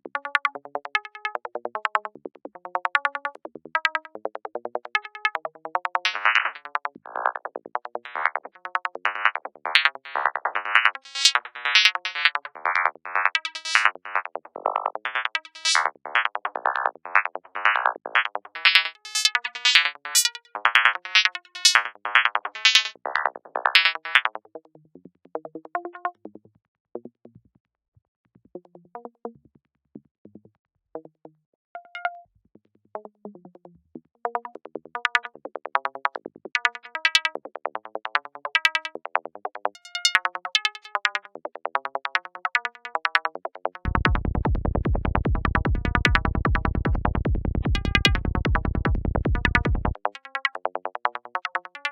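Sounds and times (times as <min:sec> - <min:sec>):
synthesizer pitched blips: 0:09.1 - 0:23.0, 0:43.9 - 0:50.0.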